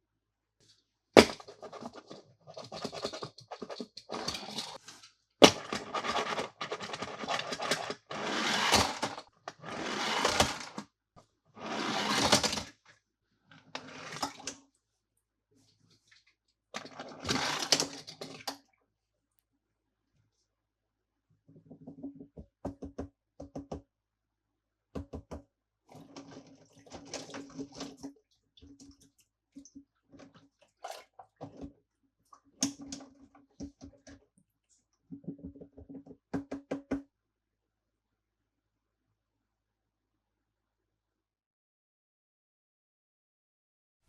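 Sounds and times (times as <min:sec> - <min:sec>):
packaging rustling and scraping: 0:01.2 - 0:10.8.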